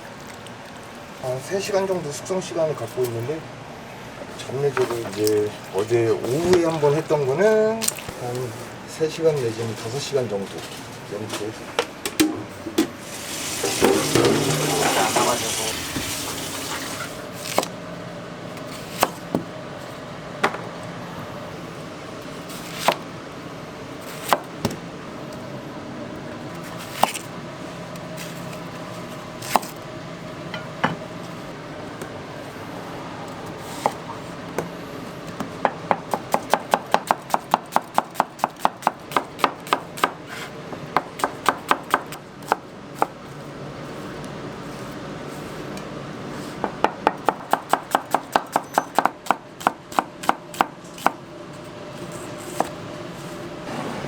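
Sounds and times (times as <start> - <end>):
knife chopping on cutting board: 18.9 - 19.5, 35.3 - 42.6, 46.6 - 51.2.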